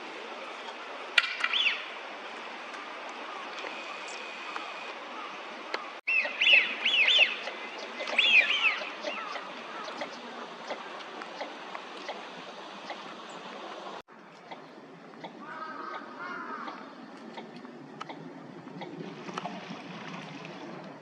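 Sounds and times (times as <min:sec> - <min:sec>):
bird chirps: 0:01.4 - 0:01.9, 0:06.1 - 0:10.2.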